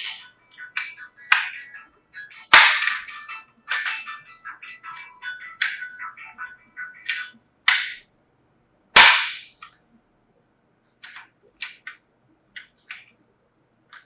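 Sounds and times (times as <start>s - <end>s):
sharp bangs: 2.5s - 3.1s, 9.0s - 9.6s.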